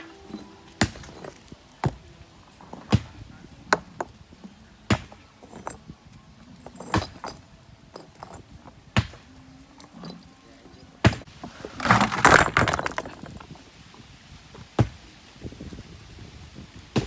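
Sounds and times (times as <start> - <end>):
tool striking brick: 0.8 - 2.0, 2.7 - 4.1, 4.9 - 5.8, 9.0 - 9.3.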